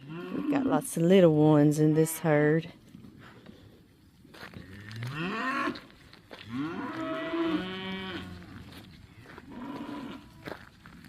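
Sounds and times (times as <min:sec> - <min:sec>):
cattle mooing: 0:00.0 - 0:00.8, 0:04.7 - 0:05.8, 0:06.5 - 0:10.6.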